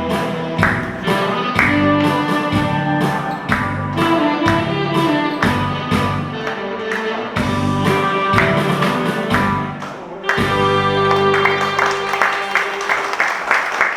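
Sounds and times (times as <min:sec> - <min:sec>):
backing track with drum beat: 0:00.0 - 0:11.8
saxophone playing melody: 0:10.2 - 0:12.5.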